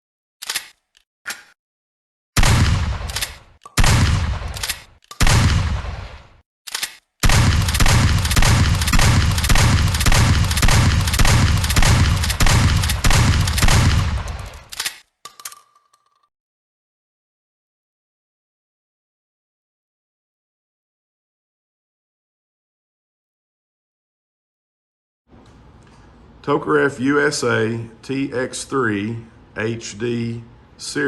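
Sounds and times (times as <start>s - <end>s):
gun clicks: 0.4s - 1.6s, 2.9s - 5.6s, 6.7s - 16.3s
rapid automatic gunfire: 2.4s - 6.2s, 7.2s - 14.7s
single gunshots: 2.4s - 6.4s, 7.2s - 14.7s.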